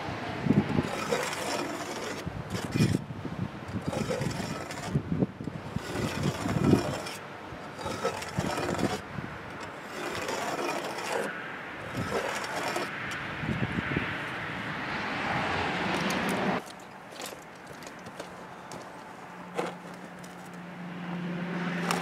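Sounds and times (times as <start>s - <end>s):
knocks and scraping on wood: 0.7s - 13.2s, 15.9s - 20.6s, 21.7s - 22.0s.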